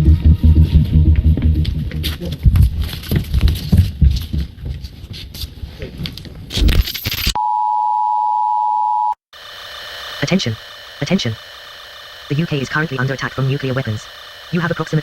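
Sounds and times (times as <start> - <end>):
low throb: 0.0 - 2.8
crackling distorted noise: 9.4 - 15.0.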